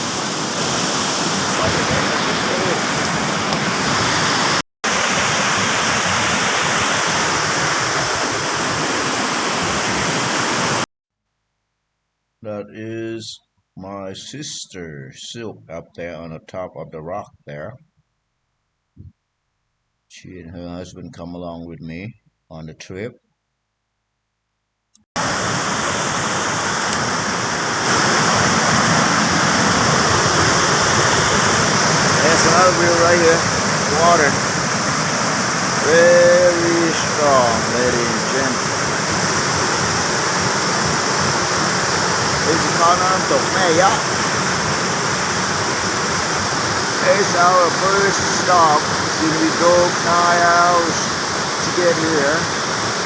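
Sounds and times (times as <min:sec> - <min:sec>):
waterfall rushing over rock: 0:00.0 - 0:10.8, 0:25.2 - 0:53.0.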